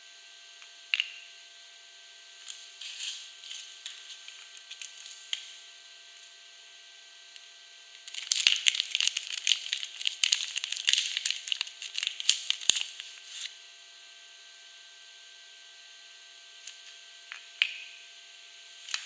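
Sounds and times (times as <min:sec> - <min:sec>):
wrapper crackling and tearing: 0:08.0 - 0:13.5.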